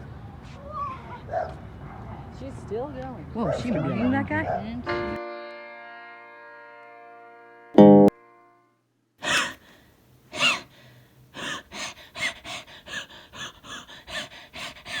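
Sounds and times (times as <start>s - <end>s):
person wheezing with laughter: 9.2s - 9.7s, 10.4s - 10.7s, 11.4s - 15.0s.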